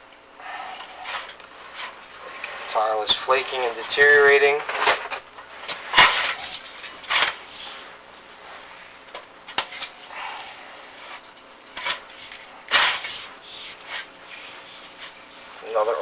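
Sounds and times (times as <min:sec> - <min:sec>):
cable scraping against flue: 0:00.4 - 0:08.0.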